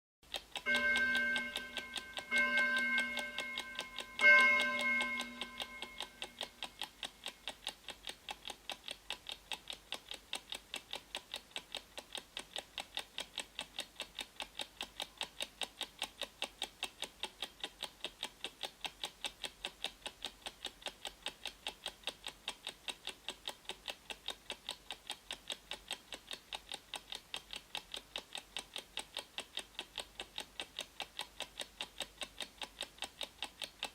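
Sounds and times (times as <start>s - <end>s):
clock ticking: 0.2s - 33.9s
pitched chimes: 0.7s - 6.4s.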